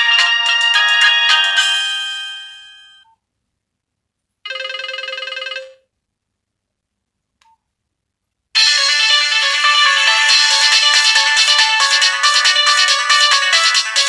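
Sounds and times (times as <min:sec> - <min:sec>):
mobile phone ringtone tune: 0:00.0 - 0:03.1, 0:04.5 - 0:05.8.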